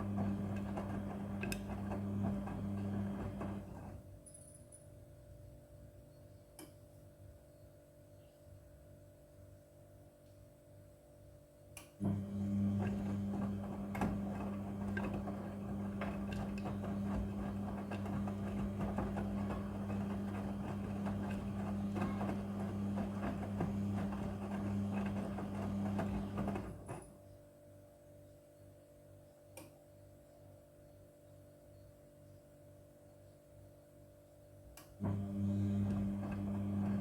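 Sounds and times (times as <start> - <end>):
washing machine motor hum: 0.0 - 4.1, 12.0 - 27.2, 35.0 - 37.0
laundry tumbling in drum: 12.7 - 27.0.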